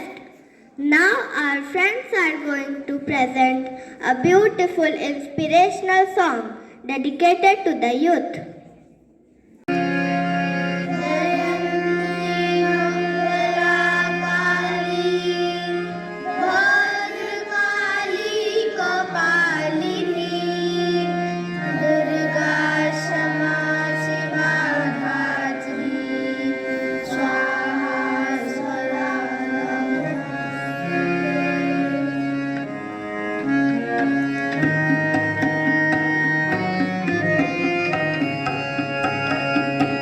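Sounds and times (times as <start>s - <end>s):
held instrumental chords: 9.7s - 40.0s
group singing together: 10.8s - 32.7s.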